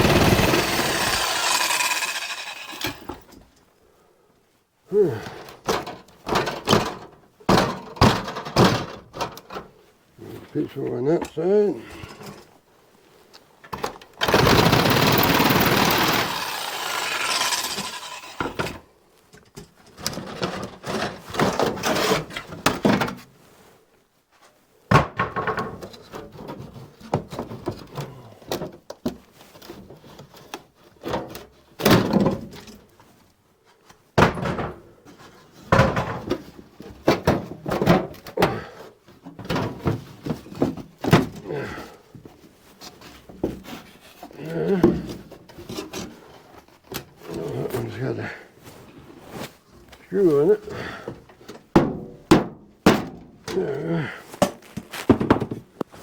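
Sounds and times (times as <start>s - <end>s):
carpentry noise on wooden boards: 0.0s - 3.6s, 13.7s - 23.2s, 24.9s - 32.8s, 34.2s - 41.4s, 42.2s - 47.3s, 54.4s - 56.0s
knocks and thuds on wood: 24.9s - 27.9s, 34.2s - 34.8s, 39.4s - 41.4s, 51.7s - 53.3s, 54.4s - 55.7s.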